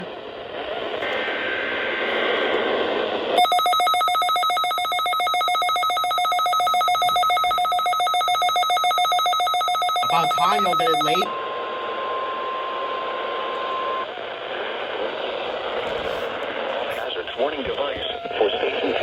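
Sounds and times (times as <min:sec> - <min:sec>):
radio static hiss: 0:00.0 - 0:03.4, 0:14.0 - 0:19.0
electronic alert tone beeping: 0:03.4 - 0:11.3.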